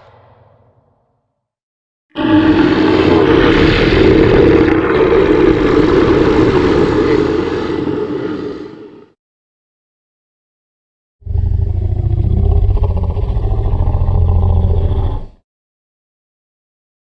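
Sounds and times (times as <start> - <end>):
monster roar: 2.1 - 9.0, 11.2 - 15.3.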